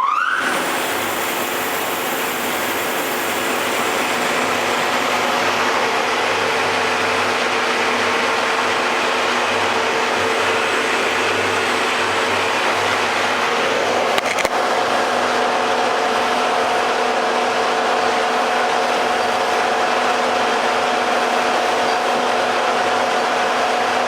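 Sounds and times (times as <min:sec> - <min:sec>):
spindle shaper motor humming: 0:00.4 - 0:24.0
clicks: 0:14.1 - 0:14.6.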